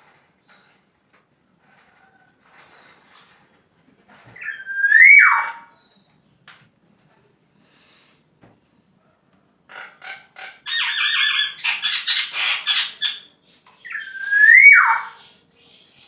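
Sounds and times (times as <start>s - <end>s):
bird harsh rasping calls: 4.4s - 5.7s, 9.8s - 16.0s
bird whistled note: 13.9s - 15.2s.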